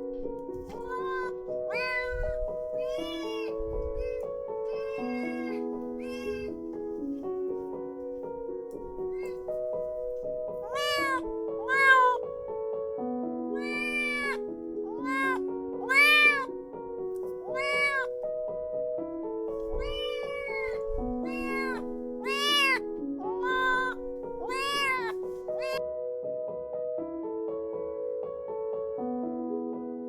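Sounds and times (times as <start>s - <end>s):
keyboard background music: 0.0s - 30.0s
kitten meowing: 0.7s - 6.6s, 8.8s - 9.6s, 10.6s - 12.2s, 13.6s - 16.5s, 17.4s - 18.2s, 19.6s - 25.8s.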